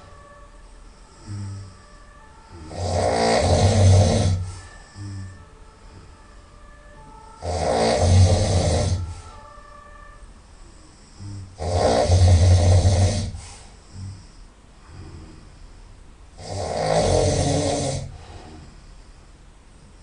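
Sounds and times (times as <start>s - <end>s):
person snoring loudly: 1.2s - 1.8s, 2.5s - 5.4s, 7.4s - 9.1s, 11.1s - 15.5s, 16.4s - 18.7s
person breathing: 3.7s - 6.3s, 13.2s - 16.0s, 18.0s - 20.0s.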